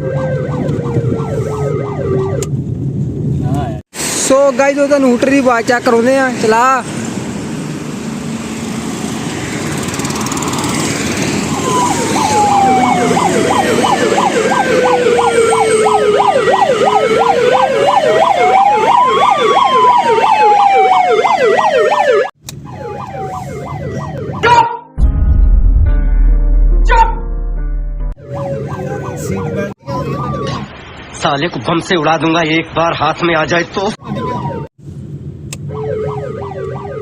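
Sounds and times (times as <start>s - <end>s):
police-style siren: 0.0s - 2.6s, 11.4s - 25.0s, 28.2s - 30.7s, 34.0s - 34.7s, 35.6s - 37.0s
vehicle noise: 0.0s - 24.4s, 25.0s - 37.0s.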